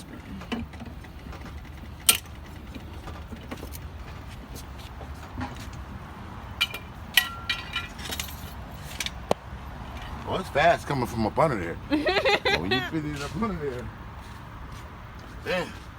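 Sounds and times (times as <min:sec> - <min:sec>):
metal tools clinking: 0:06.6 - 0:09.2
metallic clicks and ringing: 0:06.6 - 0:09.2
sharp metallic clack: 0:06.6 - 0:09.4.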